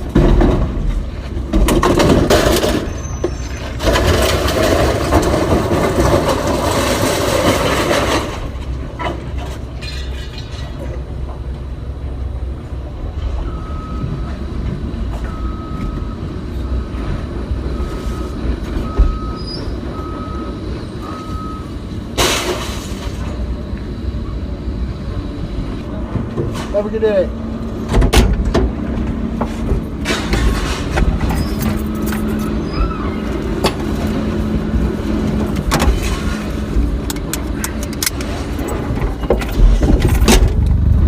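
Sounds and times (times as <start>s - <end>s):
heavy machinery rumbling: 0.0s - 41.0s
reversing alarm beeping: 13.4s - 14.4s, 15.1s - 21.9s.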